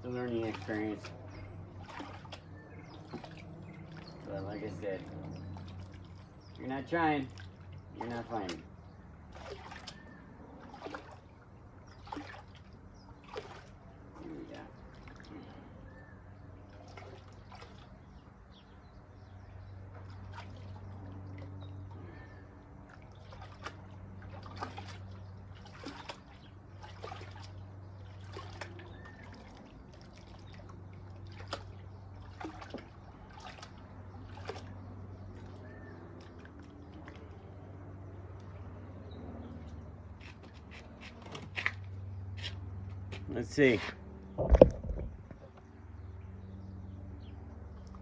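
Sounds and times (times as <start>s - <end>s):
water sloshing in a pan: 0.0s - 15.8s, 16.5s - 18.2s, 19.8s - 37.4s
low steady hum: 0.0s - 48.0s.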